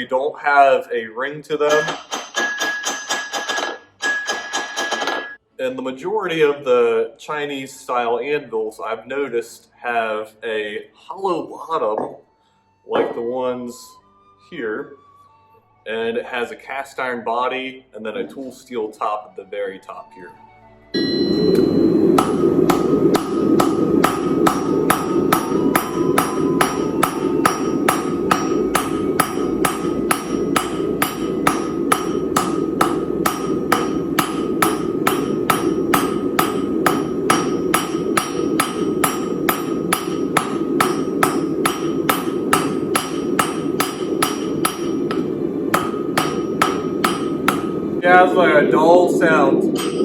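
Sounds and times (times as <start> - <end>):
hammer striking anvil: 1.7 - 5.4, 21.0 - 47.9, 49.7 - 50.0
steady low rushing noise: 21.3 - 50.0.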